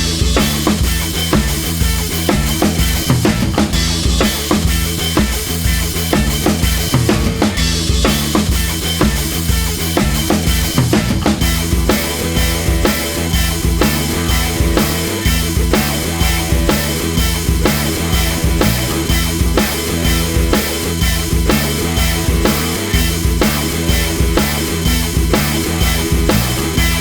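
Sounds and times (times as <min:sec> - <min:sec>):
drum kit steady beat: 0:00.0 - 0:27.0.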